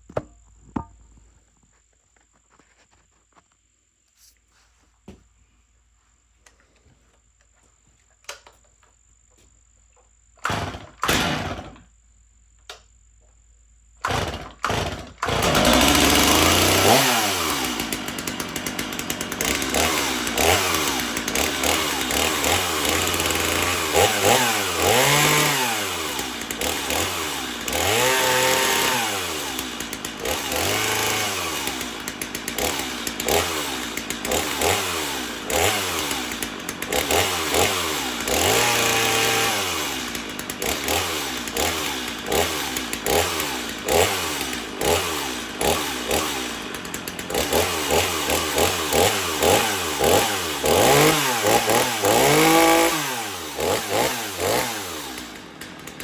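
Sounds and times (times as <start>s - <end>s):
chainsaw revving: 10.4s - 11.9s, 14.0s - 56.0s.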